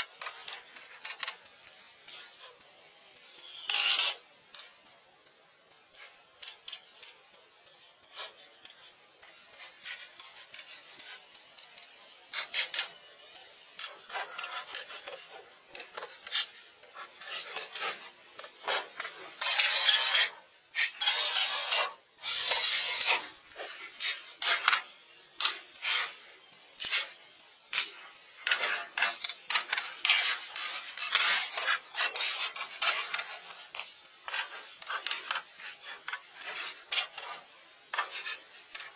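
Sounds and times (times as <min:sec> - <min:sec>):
rasping scraping strokes: 0:14.1 - 0:26.2, 0:26.8 - 0:38.9.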